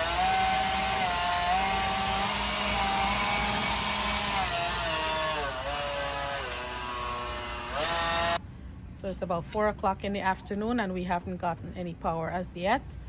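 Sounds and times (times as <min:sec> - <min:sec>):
power tool whining: 0:00.0 - 0:08.4.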